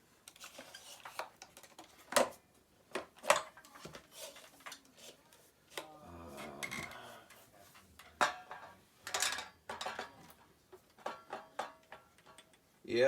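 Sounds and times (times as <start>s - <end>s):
clicks and knocks of parts handled: 0.2s - 12.7s.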